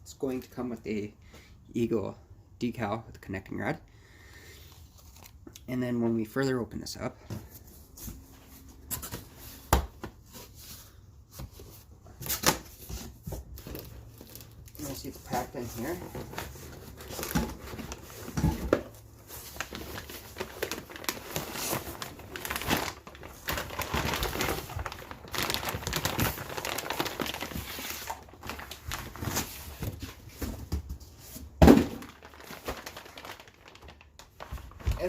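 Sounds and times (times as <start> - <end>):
plastic wrapping crinkling: 13.5 - 30.6, 31.8 - 35.0.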